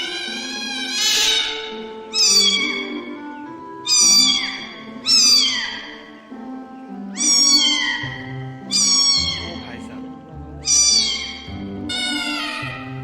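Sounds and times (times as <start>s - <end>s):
background music: 0.0s - 13.0s
cat meowing: 7.2s - 8.1s, 8.7s - 13.0s.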